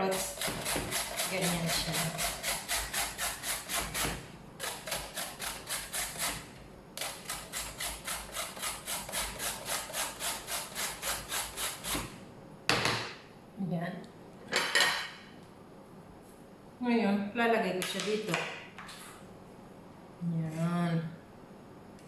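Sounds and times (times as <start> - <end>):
carrot being grated: 0.0 - 12.1.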